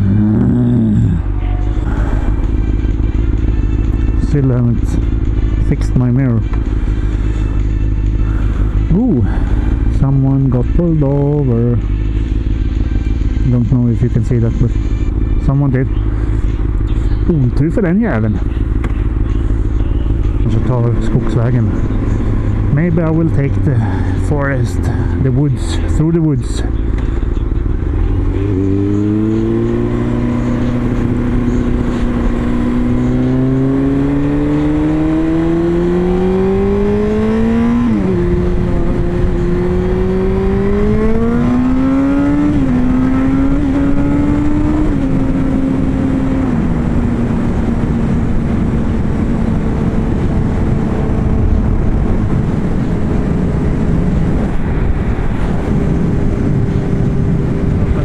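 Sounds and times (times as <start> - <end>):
motorcycle engine revving through gears: 0.0 - 58.0
wind on microphone: 46.6 - 58.0.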